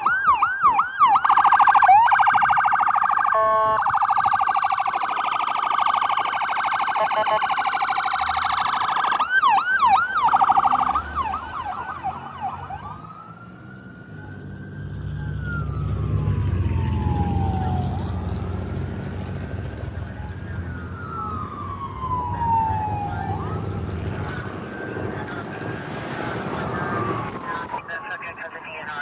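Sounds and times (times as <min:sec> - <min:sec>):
emergency vehicle siren: 0:00.0 - 0:29.0
low vehicle rumble: 0:06.2 - 0:28.6.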